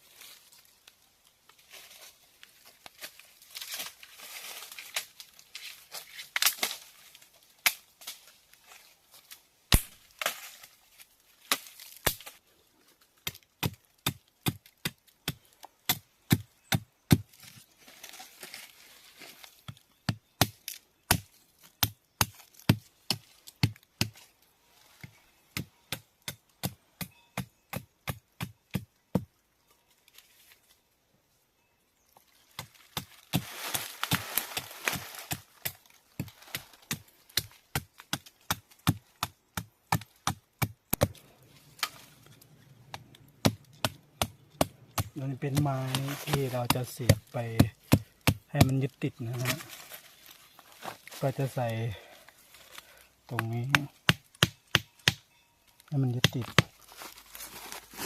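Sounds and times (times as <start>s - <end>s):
rustling and tearing of plants: 0.0s - 15.8s, 16.6s - 25.3s, 32.1s - 39.2s, 40.0s - 54.4s, 55.8s - 58.0s
machete chopping wood: 9.7s - 10.6s, 11.5s - 12.4s, 13.2s - 17.5s, 20.1s - 24.2s, 25.6s - 29.3s, 32.6s - 41.2s, 42.9s - 49.7s, 53.3s - 55.2s.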